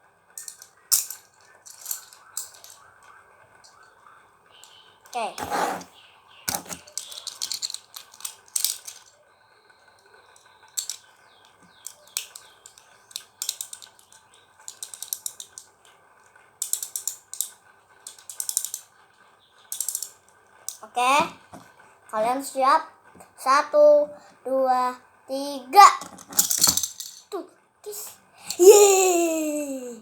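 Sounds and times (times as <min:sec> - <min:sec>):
cord winding round spinning top: 0:00.4 - 0:03.8, 0:05.1 - 0:05.9, 0:06.5 - 0:09.2, 0:09.9 - 0:23.2, 0:25.9 - 0:30.0.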